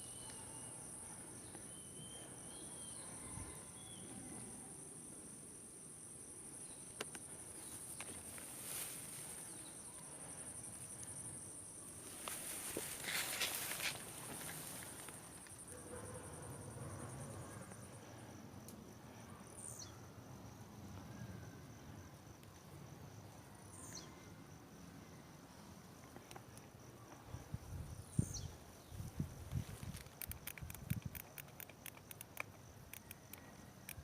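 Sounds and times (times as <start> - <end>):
insect trilling: 29.6 - 34.0.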